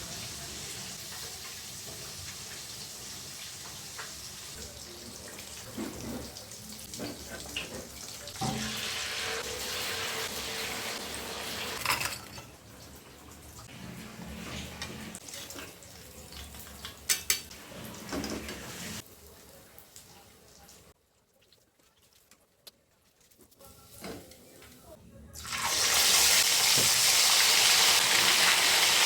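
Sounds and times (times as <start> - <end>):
dishes and cutlery clattering: 11.7 - 12.6, 14.6 - 18.9.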